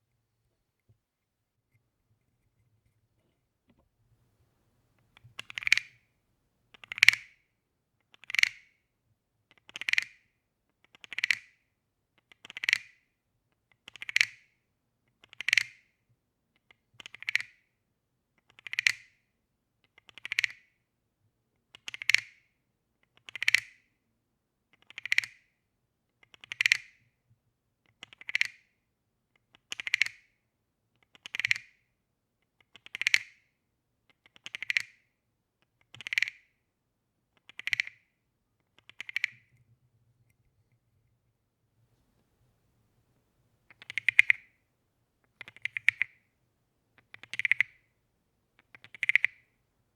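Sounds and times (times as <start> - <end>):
wooden frog toy rasping: 5.2 - 6.0, 35.9 - 36.4, 38.8 - 39.6, 43.7 - 44.5, 45.3 - 46.2, 47.0 - 47.8, 48.6 - 49.4.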